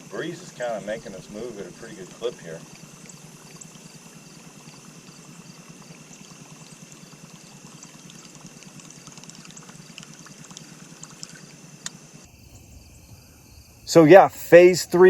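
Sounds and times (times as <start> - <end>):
water lapping against boat hull: 0.0 - 12.2
faint high-pitched whine: 0.0 - 15.0
small irregular clicks: 6.1 - 12.1.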